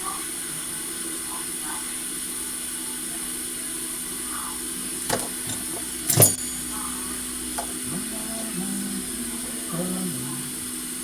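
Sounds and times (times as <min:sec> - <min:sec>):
low electronic hum: 0:04.4 - 0:11.0.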